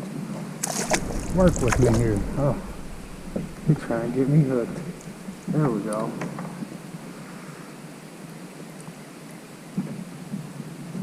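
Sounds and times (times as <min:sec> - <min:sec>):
water around a kayak: 0:00.0 - 0:07.6
wind: 0:00.0 - 0:11.0.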